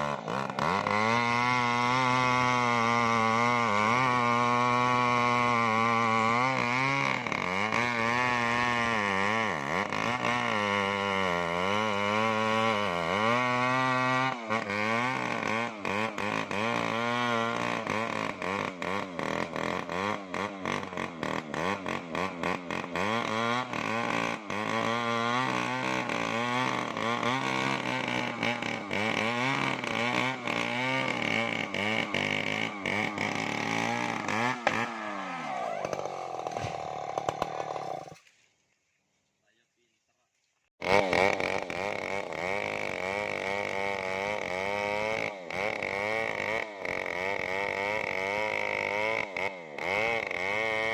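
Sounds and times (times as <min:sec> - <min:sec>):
chainsaw cutting at high revs: 0:00.0 - 0:38.4, 0:40.8 - 0:50.9.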